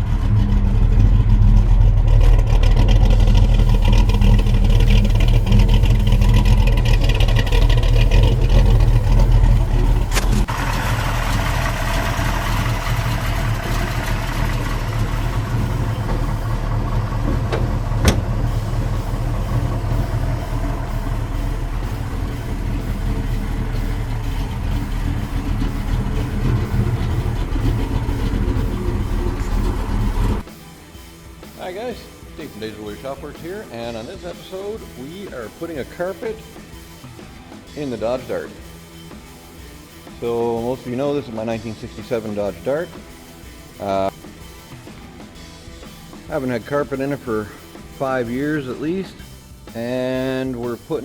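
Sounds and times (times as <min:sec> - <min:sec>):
vee eight engine running: 0:00.0 - 0:30.5.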